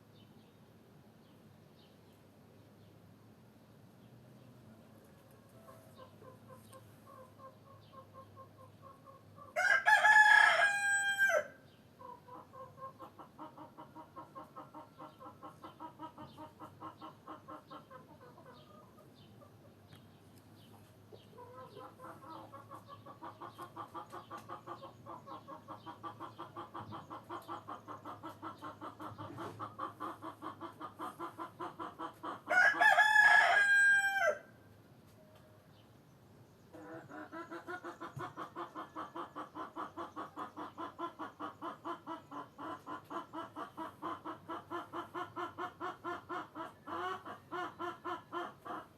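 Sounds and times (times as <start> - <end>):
hens clucking: 5.2 - 9.6, 12.0 - 32.9, 36.7 - 48.9
rooster crowing: 9.6 - 11.6, 32.5 - 34.5.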